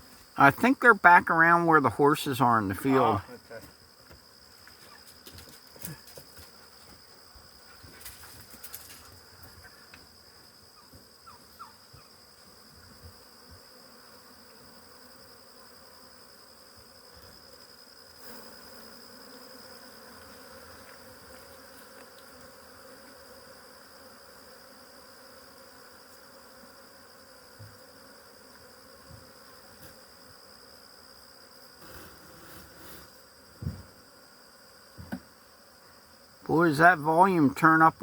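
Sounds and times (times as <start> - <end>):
honey bees buzzing: 0.0 - 5.6, 6.2 - 38.0.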